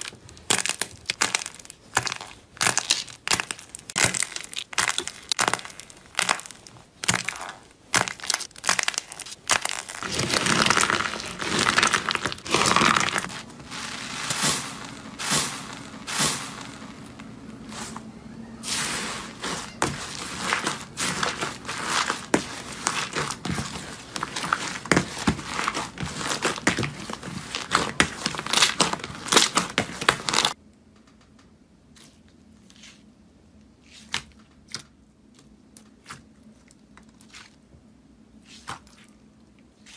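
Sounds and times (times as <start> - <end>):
slime crackling and popping: 0.0 - 17.3, 19.3 - 30.6.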